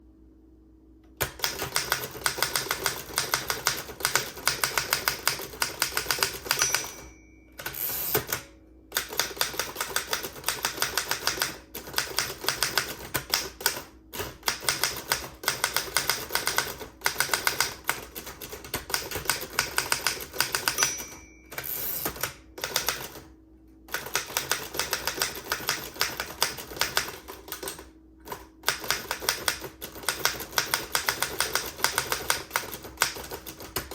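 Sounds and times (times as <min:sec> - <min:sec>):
typewriter key strikes: 0:01.2 - 0:23.2, 0:23.9 - 0:33.9
typewriter carriage return rasp: 0:01.2 - 0:23.3, 0:23.9 - 0:33.9
typewriter margin bell ding: 0:04.7 - 0:08.4, 0:19.4 - 0:23.0.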